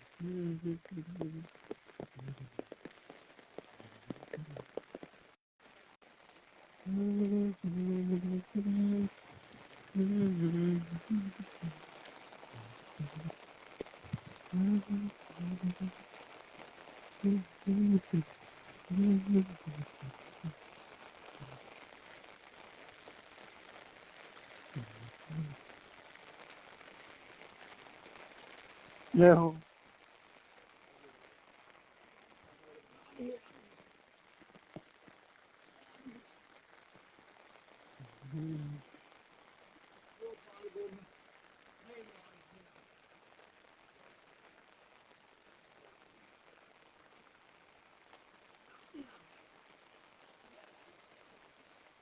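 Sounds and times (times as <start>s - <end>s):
rain pattering: 0.0s - 52.0s
short low sounds: 18.9s - 20.4s.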